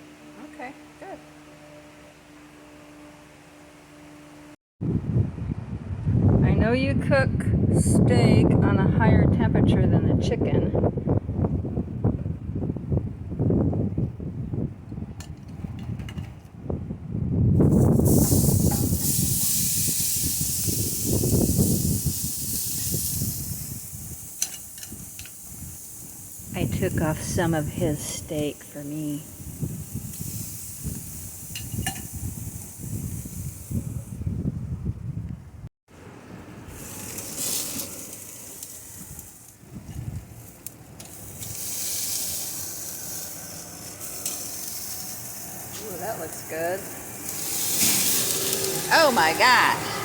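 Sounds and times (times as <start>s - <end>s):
low rumble: 4.8s - 14.9s
meat sizzling on a grill: 17.6s - 33.8s, 36.7s - 49.8s.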